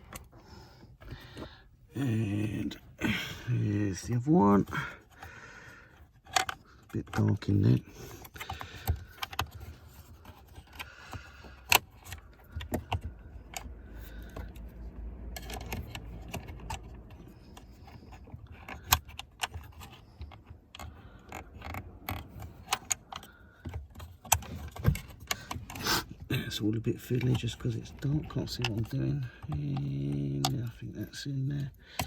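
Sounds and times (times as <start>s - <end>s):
screw clicking and rattling by hand: 5.9s - 26.3s.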